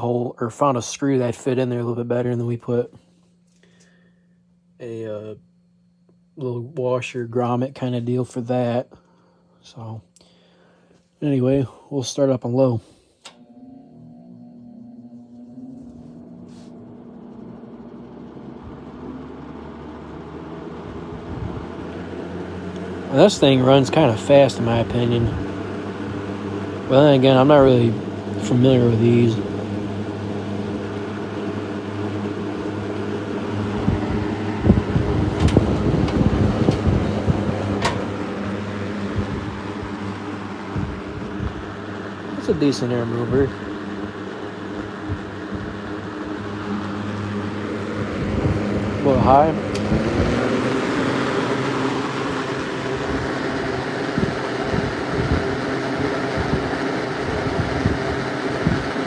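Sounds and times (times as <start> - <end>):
box fan humming: 0.0 - 59.0
airflow buffeting microphone: 12.7 - 59.0
gusty low rumble: 13.4 - 25.5, 33.5 - 40.1, 44.9 - 58.9.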